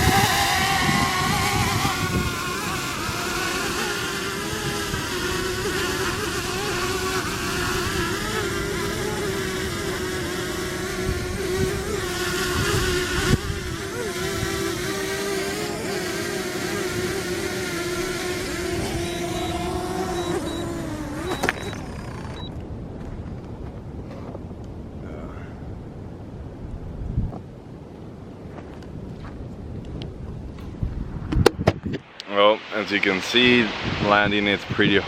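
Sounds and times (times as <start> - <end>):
drone propellers buzzing: 0.0 - 22.6
wind rumbling on microphone: 0.0 - 35.0.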